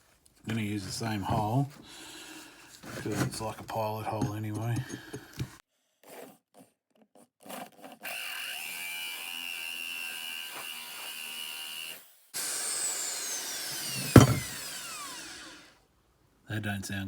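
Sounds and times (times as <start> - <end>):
electric drill whining into steel: 8.0 - 15.8.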